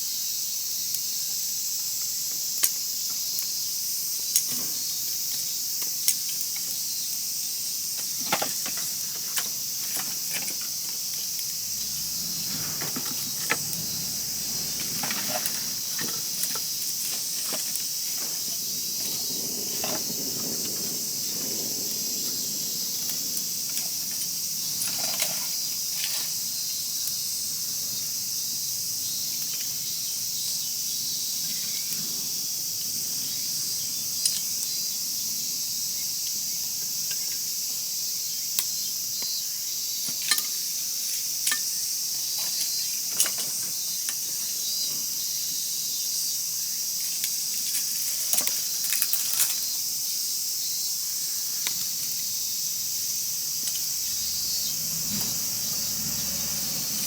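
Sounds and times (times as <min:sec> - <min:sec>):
crickets chirping: 0:00.0 - 0:57.0
wood fire crackling: 0:04.3 - 0:26.6, 0:51.2 - 0:57.0.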